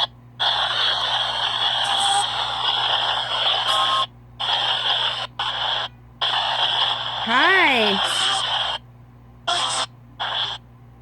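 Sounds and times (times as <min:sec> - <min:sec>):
radio static hiss: 0:07.3 - 0:08.8.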